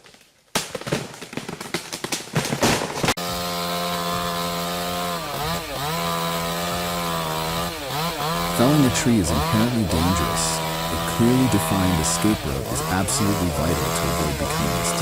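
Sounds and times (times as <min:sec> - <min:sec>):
cracks and knocks: 0:00.0 - 0:03.2
chainsaw running at high revs: 0:03.2 - 0:15.0.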